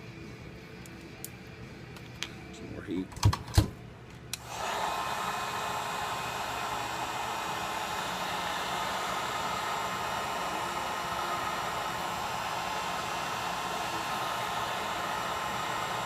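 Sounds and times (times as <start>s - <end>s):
hot-air blower running: 4.3s - 16.0s.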